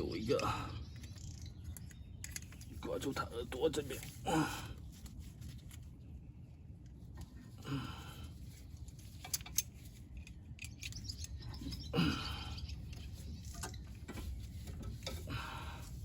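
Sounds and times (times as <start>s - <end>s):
metallic clicks and clinks: 9.1s - 11.9s.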